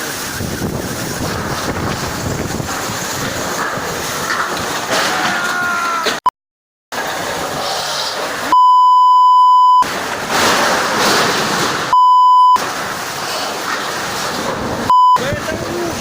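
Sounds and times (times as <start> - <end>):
wind buffeting microphone: 0.0 - 4.9
censor bleep tone: 8.5 - 9.8, 11.9 - 12.6, 14.9 - 15.2.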